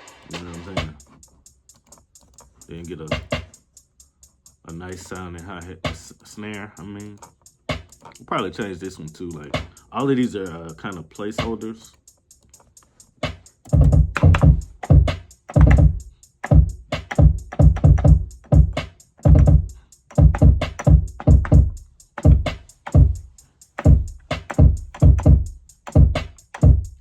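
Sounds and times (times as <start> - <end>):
hi-hat ticks: 0.0 - 27.0
kick drum hits: 13.7 - 23.2, 23.9 - 26.8
snare hits: 26.2 - 26.4.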